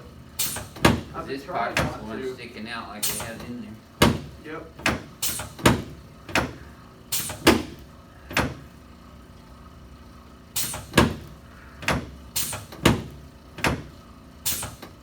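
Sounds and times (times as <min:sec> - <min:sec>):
treatment table knocks and clacks: 0:00.6 - 0:02.1, 0:03.1 - 0:06.6, 0:07.3 - 0:08.7, 0:10.7 - 0:13.9.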